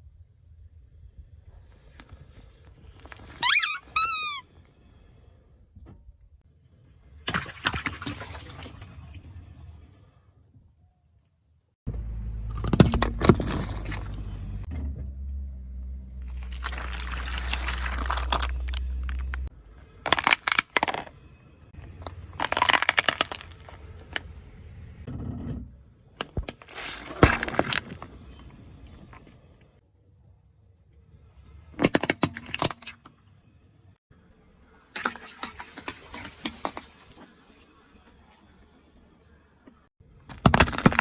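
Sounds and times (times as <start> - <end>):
crunching under a car tyre: 16.2 - 21.2, 21.8 - 24.5, 26.0 - 29.7, 40.3 - 41.0.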